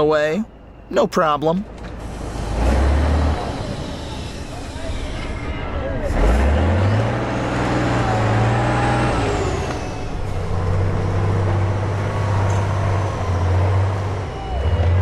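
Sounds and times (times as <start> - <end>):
rough drivetrain noise: 1.7 - 15.0
car engine revving hard: 6.0 - 14.1.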